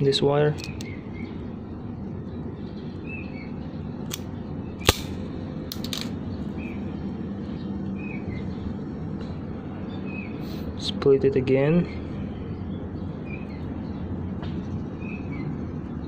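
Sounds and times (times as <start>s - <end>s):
steady low background noise: 0.0s - 16.0s
wire stripper snapping: 4.8s - 6.1s.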